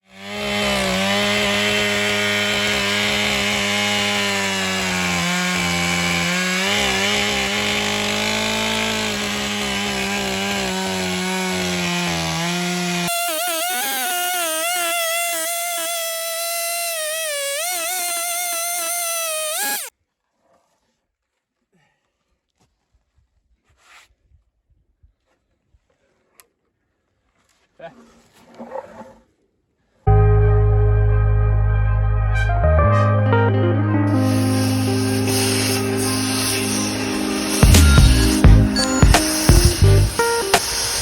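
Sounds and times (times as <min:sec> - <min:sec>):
chainsaw cutting wood: 0:00.0 - 0:19.9, 0:34.1 - 0:41.0.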